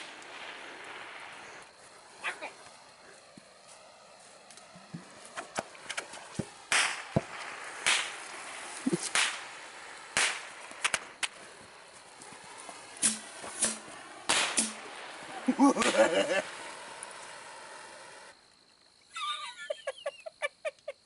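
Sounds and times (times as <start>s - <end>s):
rocket hissing: 0.0s - 19.2s
bottle rockets popping: 4.5s - 11.5s, 12.1s - 18.4s.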